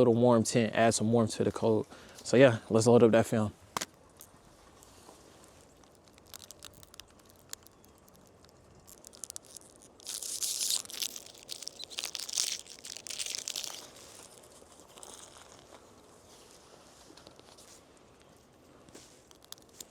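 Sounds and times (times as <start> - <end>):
faint handling noise: 3.7 - 19.9
film wrapper tearing and rustling: 5.4 - 16.1, 19.2 - 19.9
small clicks: 19.2 - 19.9.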